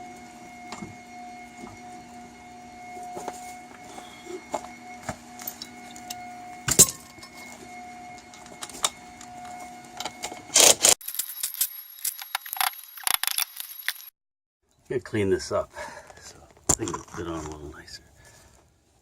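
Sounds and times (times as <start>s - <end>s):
steady hum: 0.0s - 11.0s
metal tools clinking and rattling: 5.4s - 7.4s.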